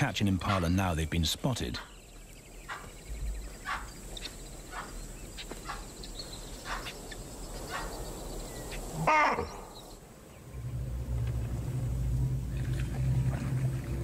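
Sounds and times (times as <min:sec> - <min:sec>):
animal alarm calls: 0:03.6 - 0:05.0.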